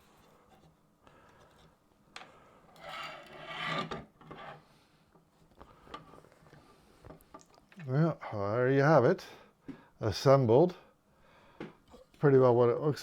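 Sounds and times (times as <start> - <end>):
scraping and rubbing: 2.8 - 4.7.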